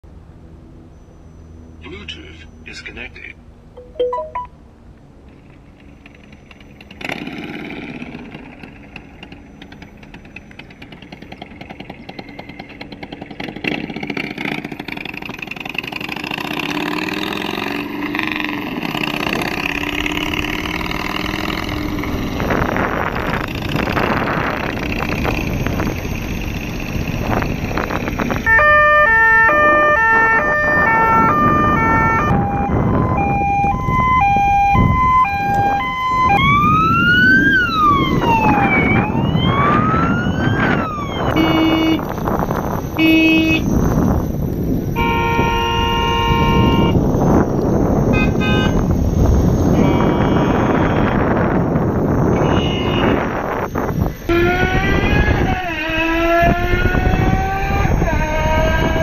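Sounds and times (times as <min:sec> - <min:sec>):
stepped electronic siren tones: 0:03.8 - 0:04.6, 0:19.5 - 0:44.4, 0:49.8 - 0:59.0
electric unicycle motor whine: 0:08.6 - 0:59.0.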